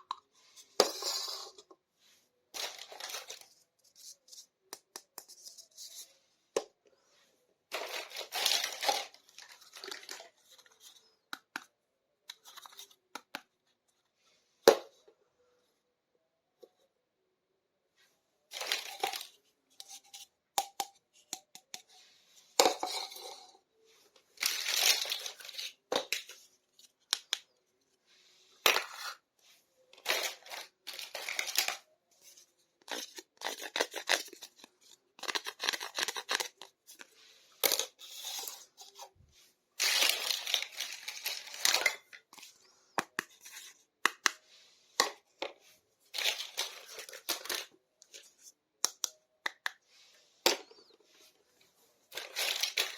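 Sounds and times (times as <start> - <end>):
packaging crinkling and tearing: 52.1 - 52.9.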